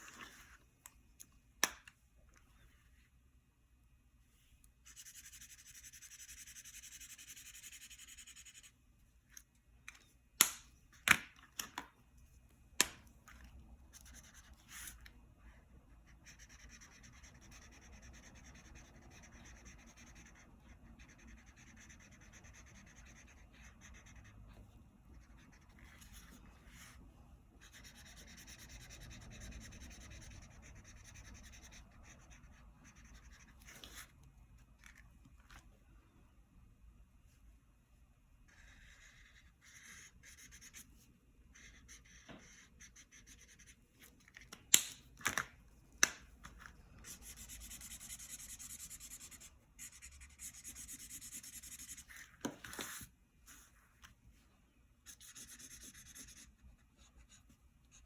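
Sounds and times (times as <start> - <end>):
colouring strokes on paper: 4.8 - 8.7, 47.0 - 52.2.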